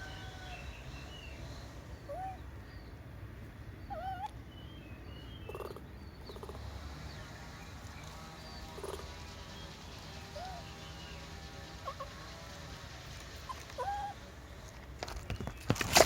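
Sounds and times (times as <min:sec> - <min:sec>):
low steady rumble: 0:00.0 - 0:15.1
baby monkey squeaking: 0:10.4 - 0:10.7, 0:13.5 - 0:14.2.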